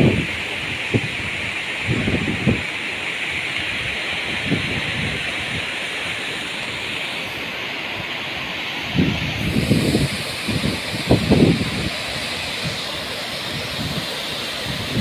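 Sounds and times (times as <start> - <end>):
wind buffeting microphone: 0.0 - 2.7, 8.9 - 15.0
waterfall rushing: 0.0 - 15.0.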